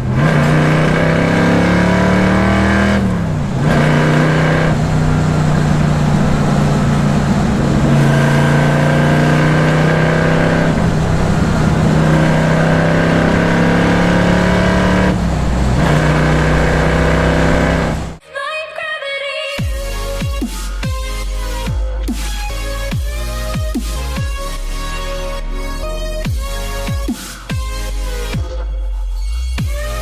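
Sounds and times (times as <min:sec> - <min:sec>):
car engine exhaust under load: 0:00.0 - 0:18.2
electronic music: 0:00.0 - 0:30.0.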